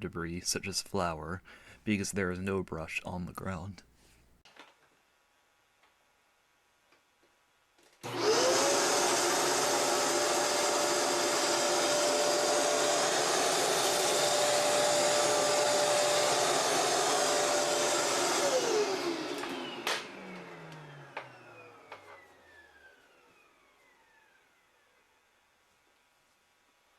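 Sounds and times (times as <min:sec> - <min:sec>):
vacuum cleaner motor whining: 0:08.0 - 0:25.2
vacuum cleaner switch click: 0:19.2 - 0:22.0.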